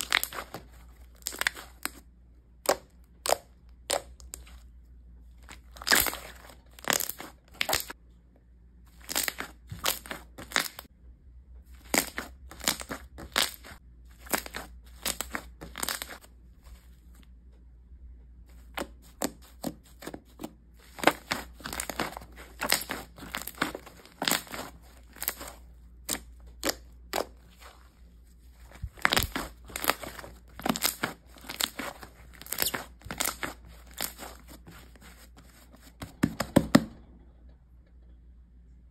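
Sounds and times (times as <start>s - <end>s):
slime crackling when squeezed: 5.6s - 7.9s, 21.0s - 27.7s, 28.8s - 34.5s.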